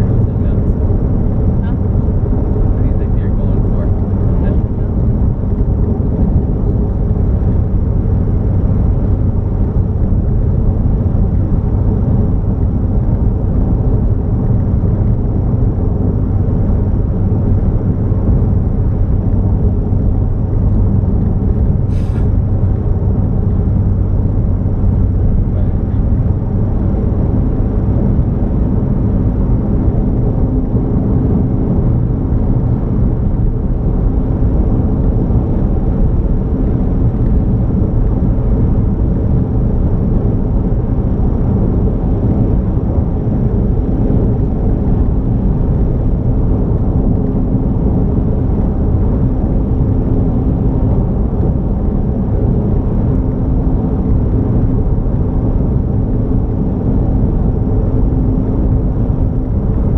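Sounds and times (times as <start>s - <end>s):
vehicle engine and road rumble: 0.0s - 59.9s.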